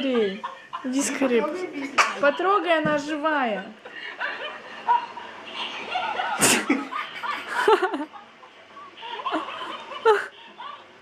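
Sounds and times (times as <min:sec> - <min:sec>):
toy laughter: 0:05.5 - 0:11.0.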